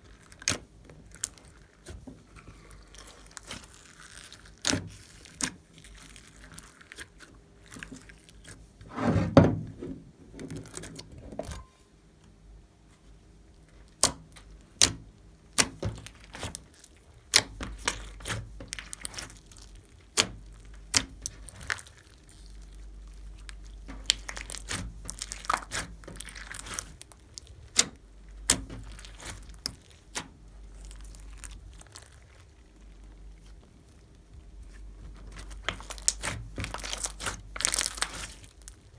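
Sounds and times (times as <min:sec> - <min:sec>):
slime squelch: 0:00.0 - 0:09.1, 0:13.5 - 0:38.9
slime clicking and popping: 0:23.5 - 0:30.2, 0:35.3 - 0:38.9.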